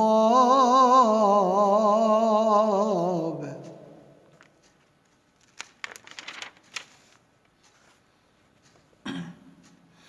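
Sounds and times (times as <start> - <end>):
soft clicks and rustles: 4.2 - 9.0.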